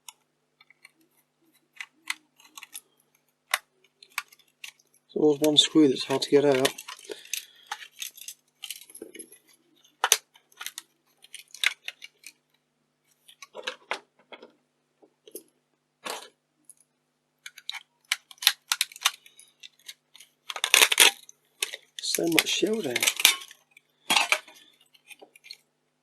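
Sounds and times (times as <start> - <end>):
metal parts clinking: 5.5 - 12.4, 17.5 - 25.6.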